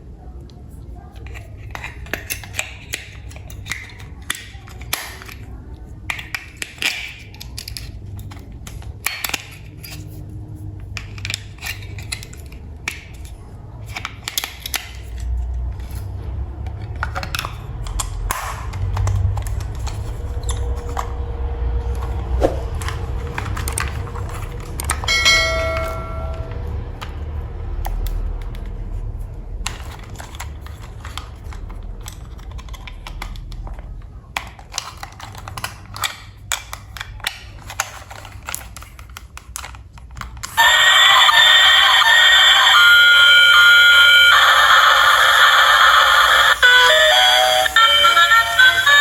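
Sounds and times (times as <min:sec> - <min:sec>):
toy train parts clicking: 0:01.1 - 0:49.0
bell-like ring: 0:25.0 - 0:26.8.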